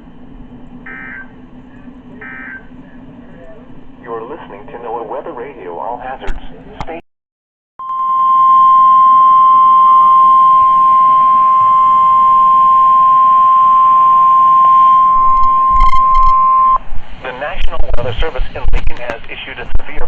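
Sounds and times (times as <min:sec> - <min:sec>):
high-pitched alarm beep: 0:00.9 - 0:01.3, 0:02.2 - 0:02.7, 0:07.8 - 0:16.8
faint radio hiss: 0:17.0 - 0:20.0.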